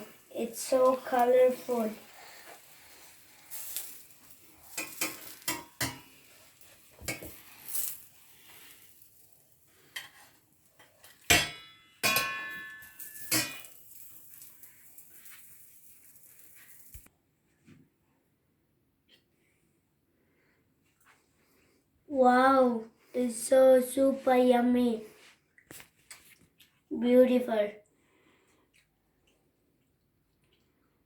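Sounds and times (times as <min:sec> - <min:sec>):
faint frying sizzle: 0:00.0 - 0:11.4, 0:12.6 - 0:17.1
utensil scraping a frying pan: 0:00.5 - 0:09.0, 0:09.7 - 0:11.4.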